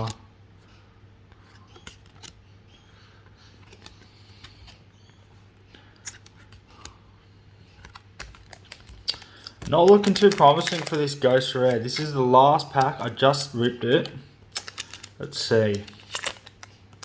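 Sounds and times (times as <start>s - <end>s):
trading cards being handled: 0.0s - 17.0s.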